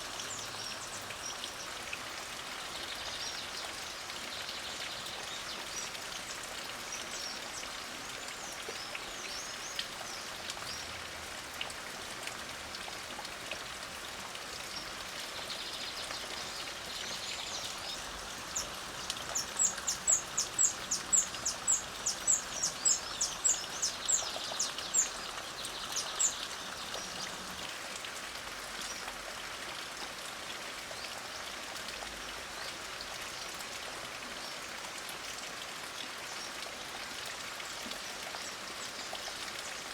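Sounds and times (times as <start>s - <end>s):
light rain falling: 0.0s - 39.9s.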